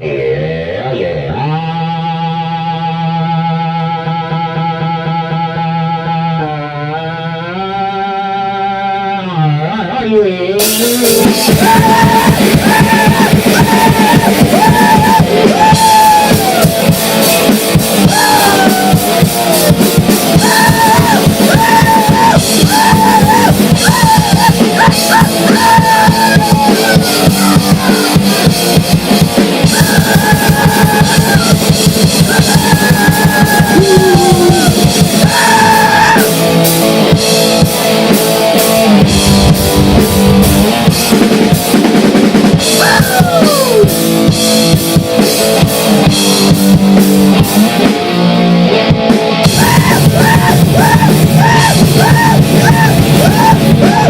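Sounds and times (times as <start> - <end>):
grindcore band playing: 9.7 - 54.0
rapid dense drumming: 10.6 - 54.0
high pitched vocal line: 11.1 - 17.0, 18.0 - 28.7, 29.6 - 36.3, 42.7 - 44.0, 49.4 - 54.0.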